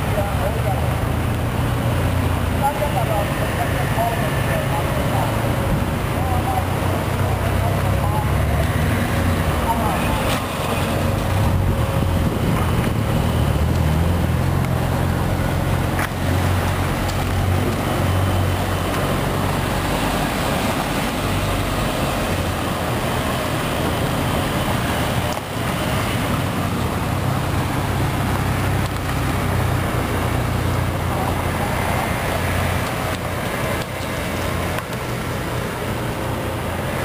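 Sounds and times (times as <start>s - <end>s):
car engine running steadily: 0.0s - 37.0s.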